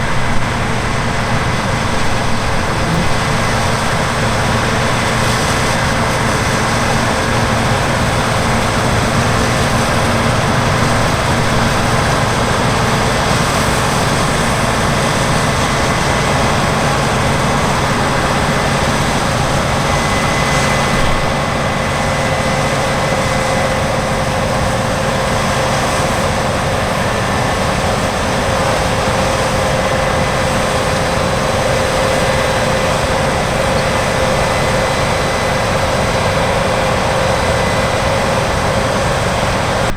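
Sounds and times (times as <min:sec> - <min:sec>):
heavy machinery engine running: 0:00.0 - 0:39.9.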